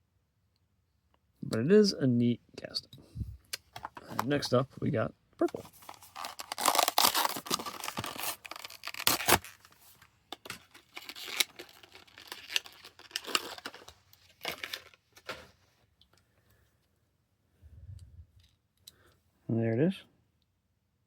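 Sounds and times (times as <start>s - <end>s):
card and plastic tearing: 5.4s - 15.5s.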